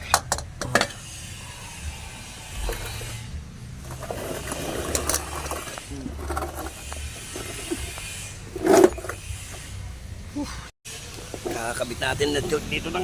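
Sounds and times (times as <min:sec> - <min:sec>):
metal rattling and scraping: 0:00.0 - 0:09.9.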